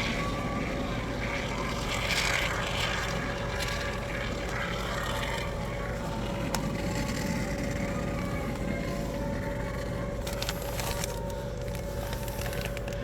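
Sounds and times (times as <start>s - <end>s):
steady machine hum: 0.0s - 13.0s.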